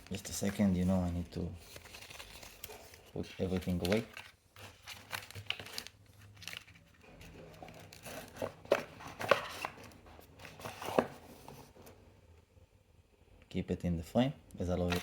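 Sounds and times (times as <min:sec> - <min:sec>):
packaging being handled: 0:00.0 - 0:11.9, 0:14.8 - 0:15.0
rustling: 0:00.0 - 0:11.9.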